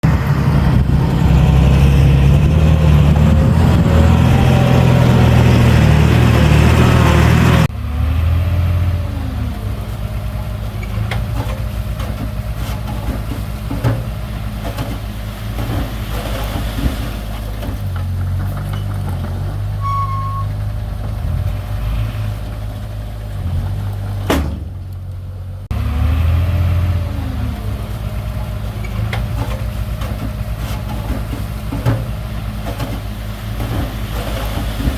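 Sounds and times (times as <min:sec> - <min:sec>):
heavy diesel machinery running: 0:00.0 - 0:34.9
short machinery squeals: 0:19.8 - 0:20.6.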